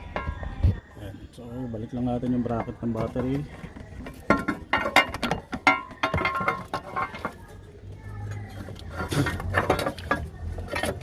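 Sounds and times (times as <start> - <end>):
metal clinks and knocks: 2.5 - 7.6, 8.3 - 11.0.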